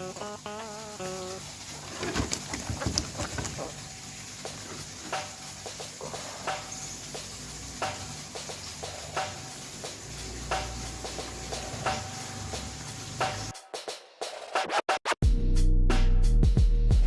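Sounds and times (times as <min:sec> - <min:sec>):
insect hiss: 0:00.0 - 0:13.5.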